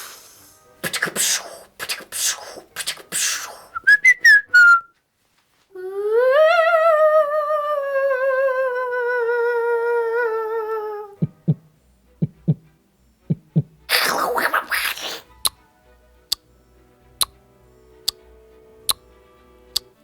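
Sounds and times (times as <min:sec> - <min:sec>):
girl making breathy hisses: 0:00.0 - 0:03.8, 0:13.9 - 0:15.3
girl making squeaky chirps: 0:00.8 - 0:04.7, 0:13.9 - 0:15.3.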